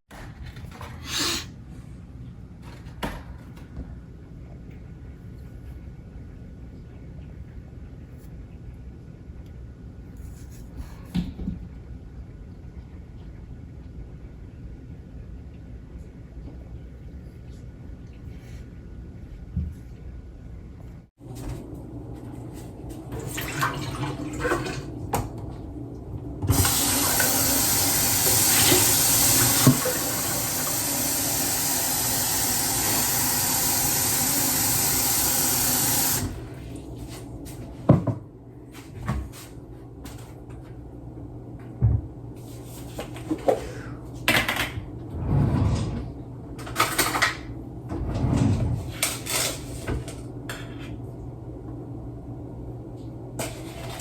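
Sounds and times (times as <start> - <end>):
tap running into sink: 26.5 - 36.3.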